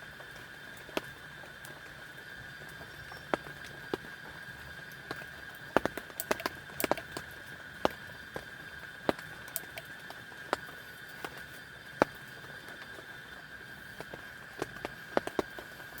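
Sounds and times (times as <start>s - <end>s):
sharp ticks and taps: 2.6s - 4.2s, 4.9s - 13.0s, 14.0s - 16.0s.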